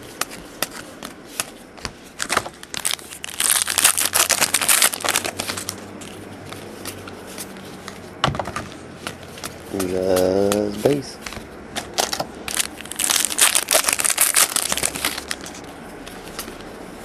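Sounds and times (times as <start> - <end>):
trading cards sliding and clicking: 0.0 - 3.1, 5.0 - 12.2, 14.9 - 17.0.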